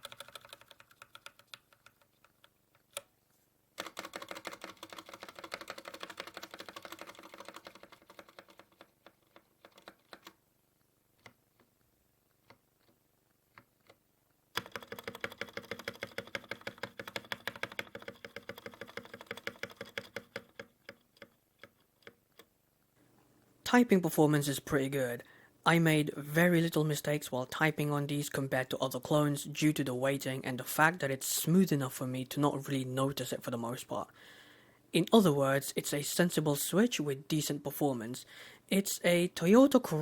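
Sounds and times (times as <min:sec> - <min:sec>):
typing on mechanical keyboard: 0:00.0 - 0:03.1, 0:03.8 - 0:10.4, 0:13.5 - 0:22.2.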